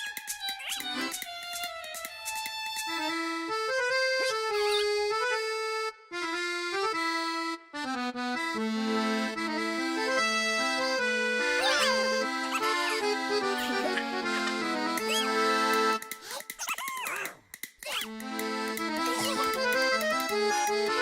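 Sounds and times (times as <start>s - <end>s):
accordion tune: 0.0s - 16.2s, 18.1s - 21.0s
gliding squeaks: 15.0s - 15.4s.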